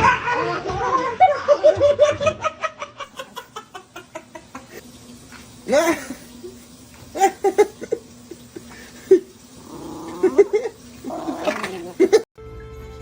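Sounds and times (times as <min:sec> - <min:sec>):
animal calling: 0:09.6 - 0:12.2.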